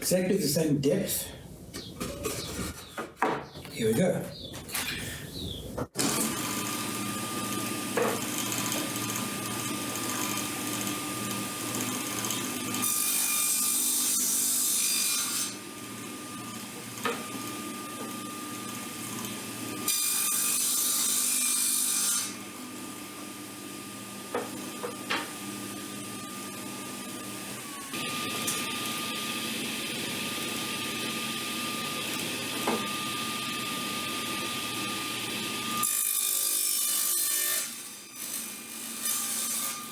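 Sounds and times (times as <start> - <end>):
wooden boards knocking: 3.0 - 3.8
woodworking power tool whining: 6.0 - 39.9.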